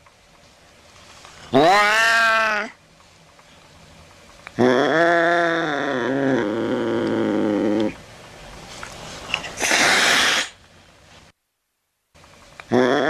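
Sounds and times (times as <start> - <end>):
cat hissing: 1.5 - 2.8, 9.4 - 10.6
cat yowling: 1.6 - 2.8.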